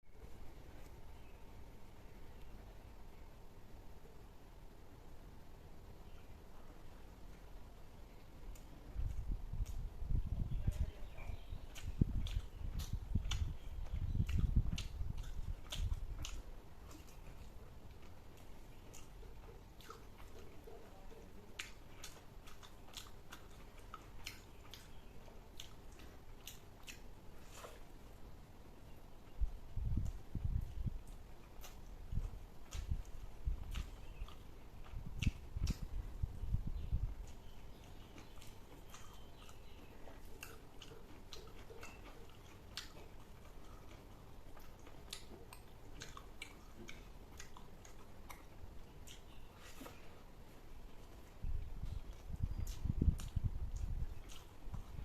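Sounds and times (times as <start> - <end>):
person chewing food: 11.4 - 28.1, 29.8 - 55.0
faint mouth clicks: 11.7 - 17.2, 32.7 - 36.0, 51.8 - 55.0.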